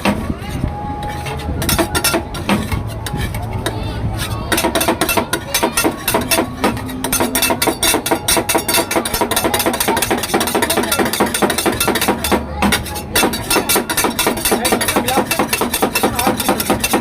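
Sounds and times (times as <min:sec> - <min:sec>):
mixture clattering in a jar: 0:04.5 - 0:17.0.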